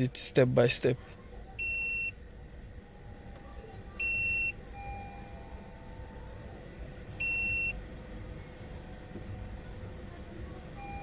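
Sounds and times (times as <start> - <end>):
short high-pitched beeps: 1.6 - 2.2, 4.0 - 6.2, 7.2 - 7.8.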